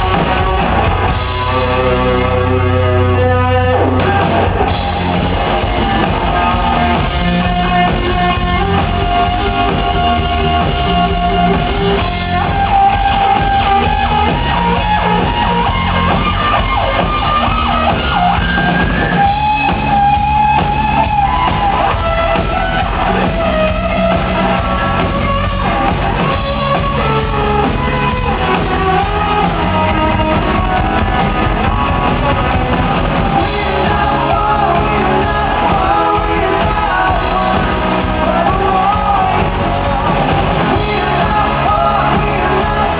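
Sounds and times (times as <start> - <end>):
bass guitar: 0.0 - 42.9
electric guitar: 0.0 - 42.9
person singing: 26.0 - 42.9.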